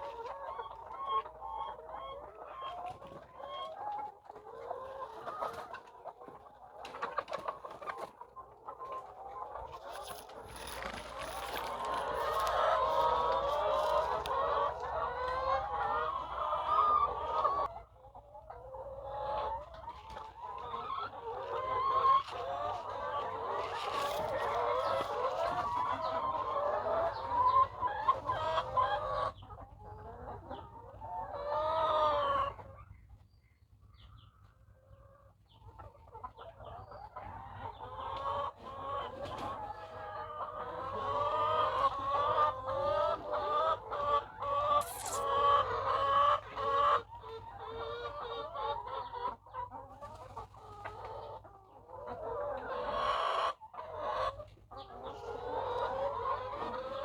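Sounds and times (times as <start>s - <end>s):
hens clucking: 0.0s - 33.2s, 33.9s - 57.0s.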